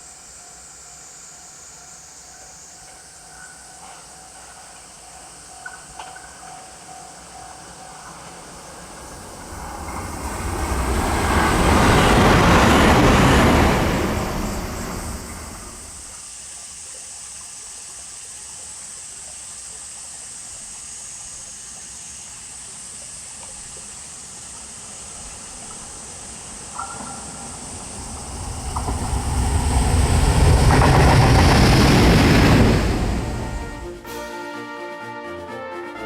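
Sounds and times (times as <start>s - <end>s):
train passing close by: 0.0s - 16.2s, 24.2s - 35.1s
background hiss: 0.0s - 36.0s.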